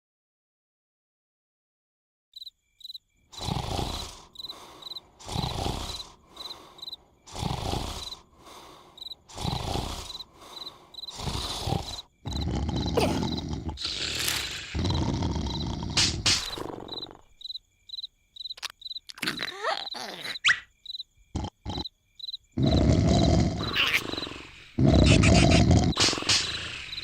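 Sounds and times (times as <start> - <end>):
crickets chirping: 2.4 - 27.0
cartoon snoring: 3.3 - 17.4, 21.3 - 21.9, 22.6 - 27.0.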